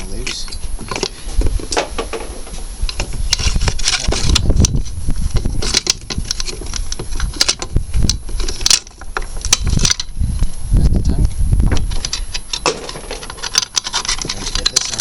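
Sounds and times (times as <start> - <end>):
metal tools clicking and rattling: 2.9 - 4.8, 5.6 - 10.1, 11.8 - 15.0.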